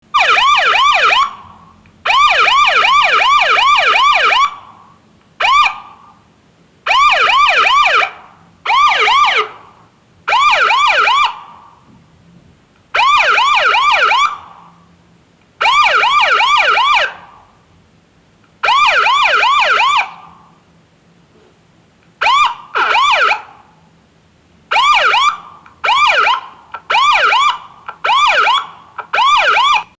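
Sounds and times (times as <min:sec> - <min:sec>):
police siren yelp: 0:00.1 - 0:04.8, 0:05.4 - 0:06.2, 0:06.9 - 0:11.9, 0:12.9 - 0:14.7, 0:15.6 - 0:17.5, 0:18.6 - 0:20.5, 0:22.2 - 0:23.7, 0:24.7 - 0:30.0.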